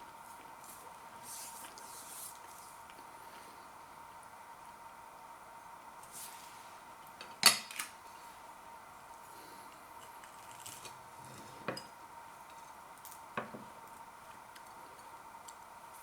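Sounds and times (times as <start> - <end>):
faint steady whine: 0.0 - 16.0.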